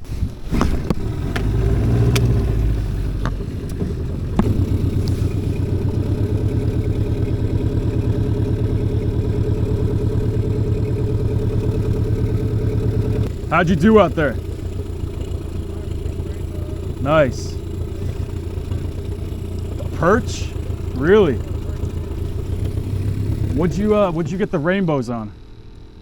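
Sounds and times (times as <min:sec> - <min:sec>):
engine idling: 0:00.0 - 0:26.0
click: 0:02.1 - 0:02.4.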